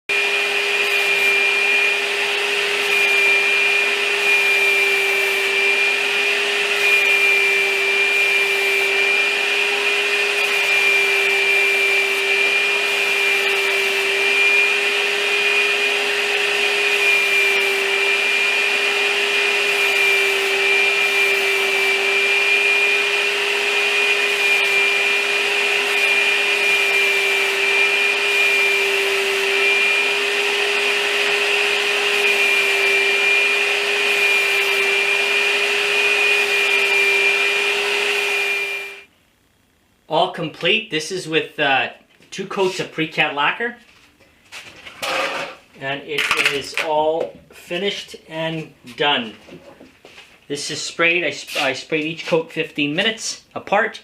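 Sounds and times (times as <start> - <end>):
machine motor whining: 0.1 - 39.1.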